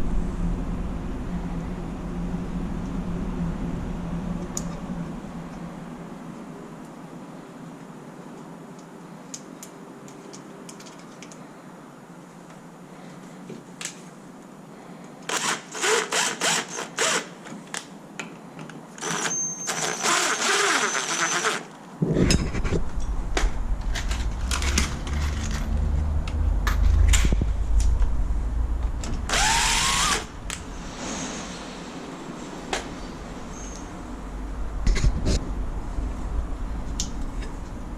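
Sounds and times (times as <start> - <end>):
steady low rumble: 0.0 - 6.8, 22.0 - 37.9
cordless power drill running: 15.3 - 17.3, 19.0 - 21.7, 29.3 - 30.3.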